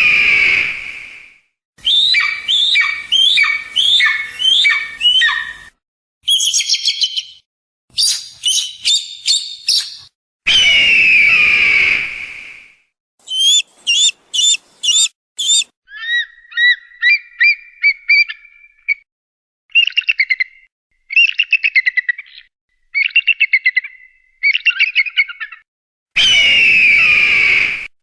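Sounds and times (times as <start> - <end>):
eagle whistled notes: 13.2 - 15.7
eagle cries: 13.2 - 16.2.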